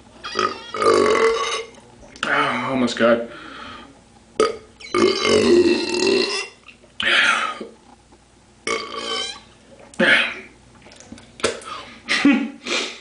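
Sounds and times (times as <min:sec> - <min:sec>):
man belching loudly: 0:00.4 - 0:01.7, 0:04.4 - 0:06.6, 0:08.7 - 0:09.4.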